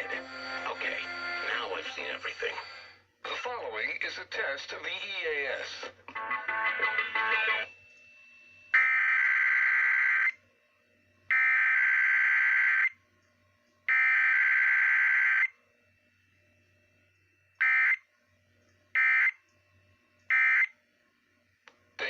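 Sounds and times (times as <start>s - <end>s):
buzzing digital data tones: 0.0s - 3.0s.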